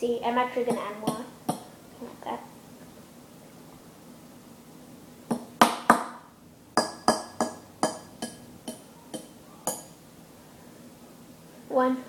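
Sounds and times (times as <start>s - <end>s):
spoon clinking against glass dish: 6.8s - 10.0s.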